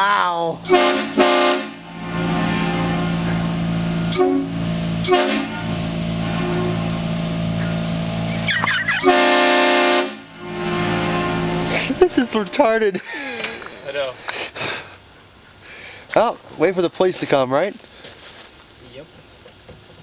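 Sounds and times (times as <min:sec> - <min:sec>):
air horn chord blasts: 0:00.6 - 0:08.3, 0:09.0 - 0:13.0.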